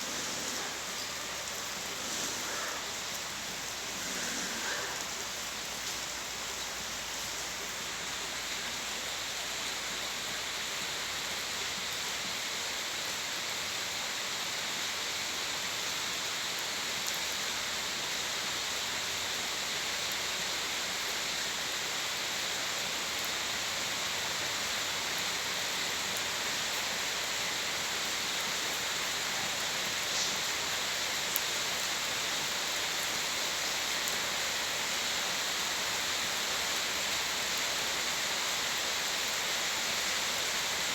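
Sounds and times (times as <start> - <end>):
faint raindrop ticks: 0.0 - 7.8, 16.5 - 17.5, 20.0 - 20.3, 28.5 - 38.0
steady rain hiss: 0.0 - 40.9.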